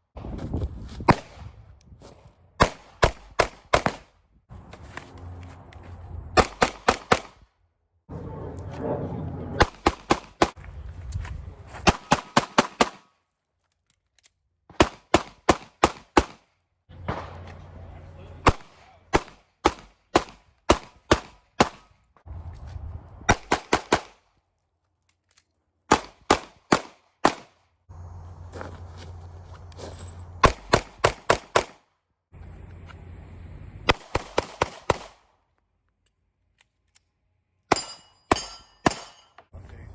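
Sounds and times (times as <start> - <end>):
pistol shots: 2.6 - 4.1, 6.4 - 7.4, 9.6 - 10.6, 11.8 - 13.0, 14.8 - 16.4, 17.0 - 21.9, 23.3 - 24.2, 25.9 - 27.6, 30.4 - 31.8, 33.9 - 35.2.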